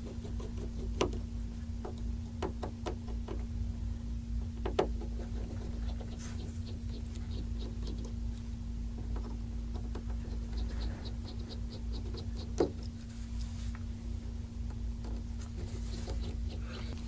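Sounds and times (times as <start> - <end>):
steady low hum: 0.0 - 17.0
screwdriver ticking and scratching: 5.0 - 8.2, 9.2 - 12.9.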